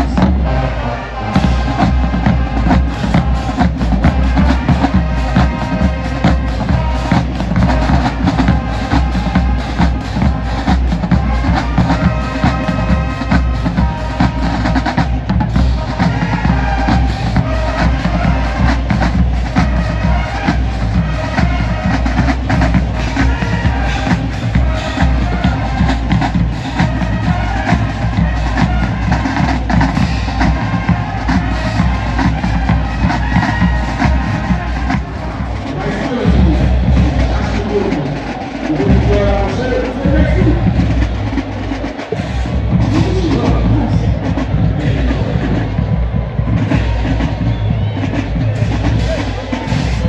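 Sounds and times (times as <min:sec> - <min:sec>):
horns holding chords: 0:00.0 - 0:50.0
marching band playing: 0:00.0 - 0:50.0
bass drum beat: 0:01.4 - 0:37.9, 0:38.7 - 0:50.0.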